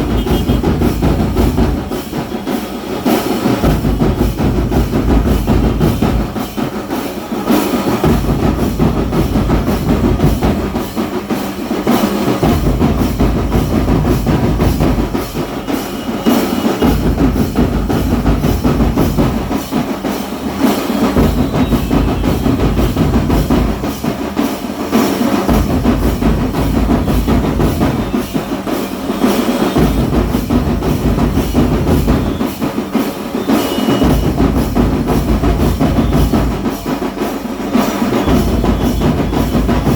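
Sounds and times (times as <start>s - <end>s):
drum-led music with deep bass: 0.0s - 6.8s, 7.9s - 37.0s.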